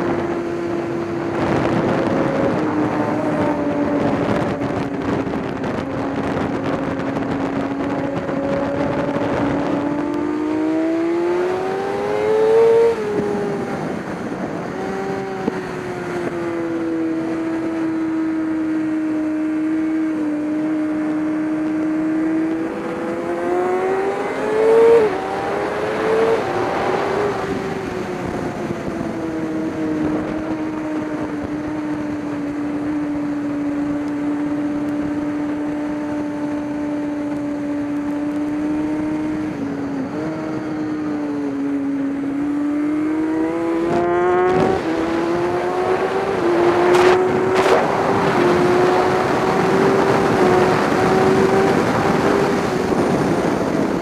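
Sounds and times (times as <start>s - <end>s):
race car engine revving: 19.4s - 54.0s.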